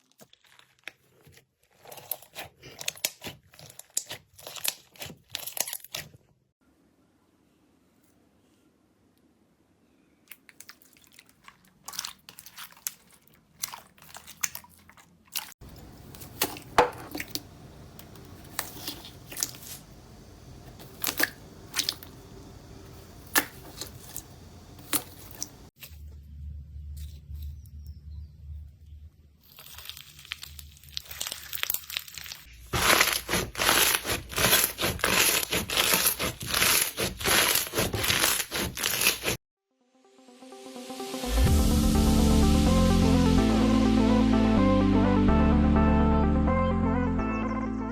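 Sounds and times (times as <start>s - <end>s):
crunchy slime crackling: 0.0s - 6.2s, 10.4s - 25.8s, 29.4s - 39.4s.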